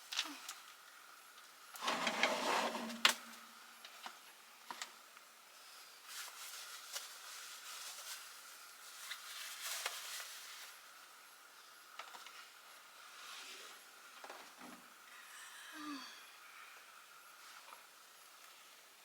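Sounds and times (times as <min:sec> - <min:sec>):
objects rustling: 0:01.8 - 0:04.2.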